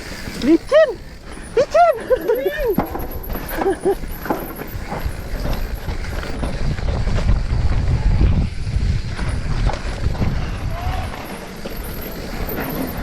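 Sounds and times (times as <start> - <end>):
bike rattling and knocking: 0.0 - 13.0
tyres on dirt: 0.0 - 13.0
wind rumble on microphone: 4.7 - 13.0.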